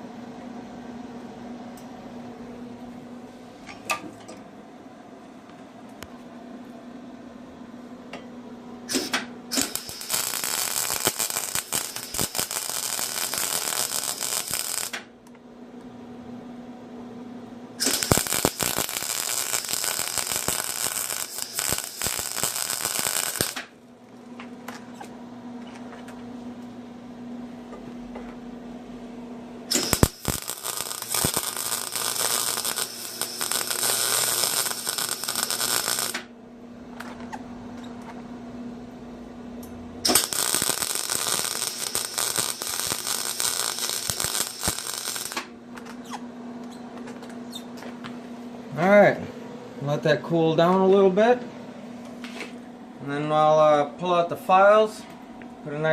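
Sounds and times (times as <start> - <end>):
low steady hum: 0.0 - 55.9
electric arc welding crackling hiss: 8.9 - 15.1, 17.8 - 23.8, 29.7 - 36.3, 40.0 - 45.5.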